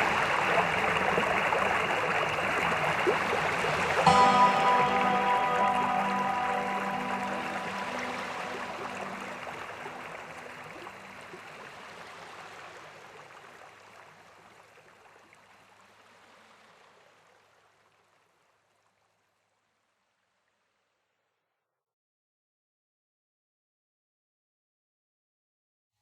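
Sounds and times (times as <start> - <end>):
rushing waterfall: 0.0 - 17.0
soft background music: 4.0 - 11.8.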